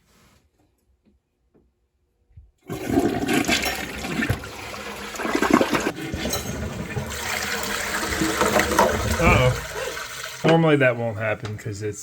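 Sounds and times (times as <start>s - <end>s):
toilet flushing water rush: 2.6s - 11.1s.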